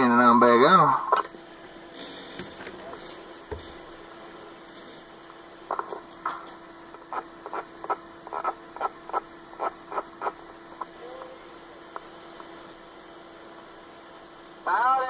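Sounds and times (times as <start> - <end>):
radio receiver hum: 0.0 - 15.0
radio chirps and pops: 5.7 - 11.3, 11.9 - 12.6.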